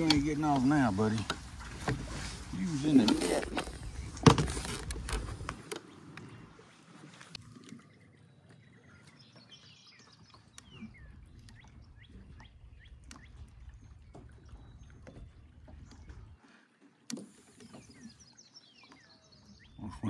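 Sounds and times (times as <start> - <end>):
light knocks on boat: 3.0 - 5.8.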